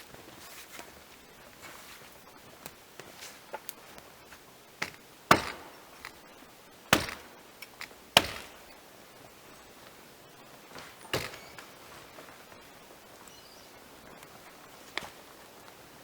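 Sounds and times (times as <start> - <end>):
axe chopping wood: 4.8 - 6.2, 6.9 - 8.7, 11.1 - 11.6.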